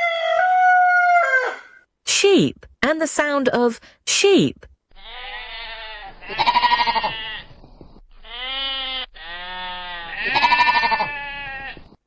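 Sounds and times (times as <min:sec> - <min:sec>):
sheep bleating: 0:04.9 - 0:07.5, 0:08.2 - 0:11.8.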